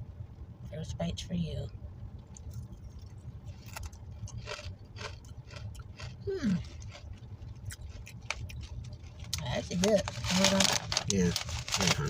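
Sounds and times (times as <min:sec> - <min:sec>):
crunchy chewing of noodle snack: 0:02.3 - 0:09.4.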